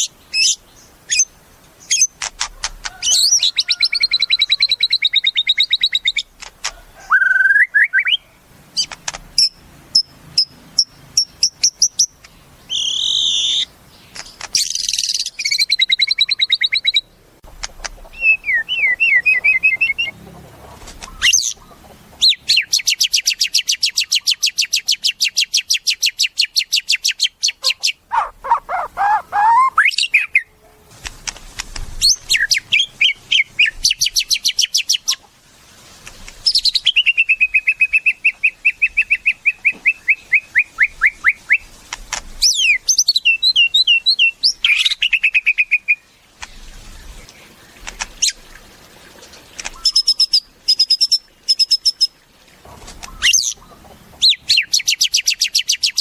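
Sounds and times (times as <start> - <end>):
bird singing: 7.1 - 17.2, 18.1 - 20.2, 26.7 - 30.6, 42.5 - 47.8.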